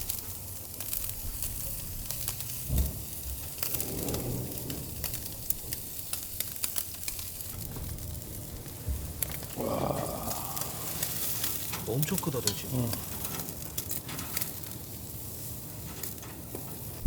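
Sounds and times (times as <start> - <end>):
meat sizzling on a grill: 0.0 - 17.0
sharp pops and crackles: 0.0 - 17.0.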